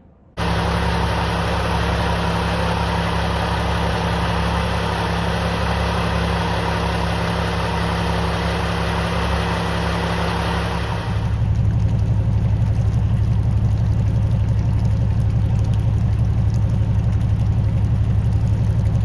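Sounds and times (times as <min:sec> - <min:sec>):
marine engine idling: 0:00.4 - 0:19.0.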